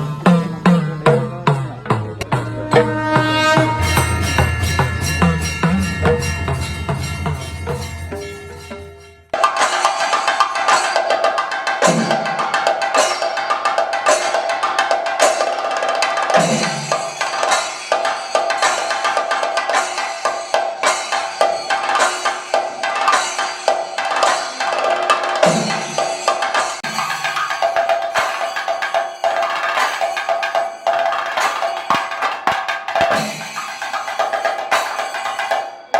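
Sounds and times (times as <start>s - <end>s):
drums playing rapid stick strokes: 0.0s - 35.9s
deep heavy drum strokes: 0.2s - 9.0s
ringing hand cymbals: 1.5s - 35.9s.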